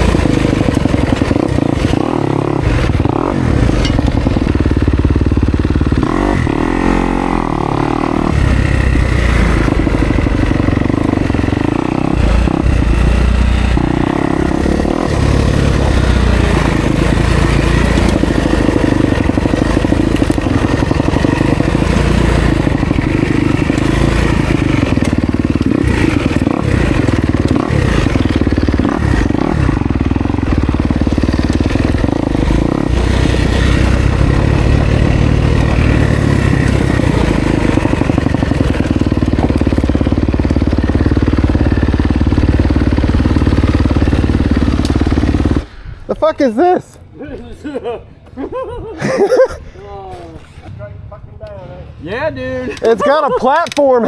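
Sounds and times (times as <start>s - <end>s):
bike clattering over rough ground: 0.0s - 5.0s, 15.7s - 45.6s
dirt bike engine revving: 0.0s - 45.8s.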